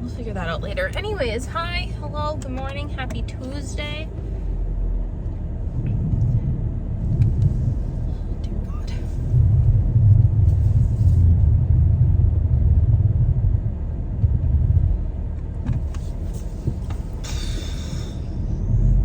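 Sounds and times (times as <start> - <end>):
car cabin rumble: 0.0 - 19.0
short hiss: 16.4 - 18.3.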